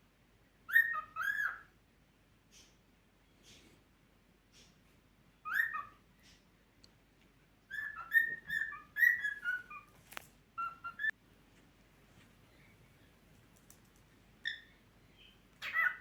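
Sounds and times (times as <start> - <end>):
cockatiel whistling: 0.7 - 1.7, 5.4 - 6.0, 7.7 - 9.9, 10.6 - 11.1, 15.6 - 16.0.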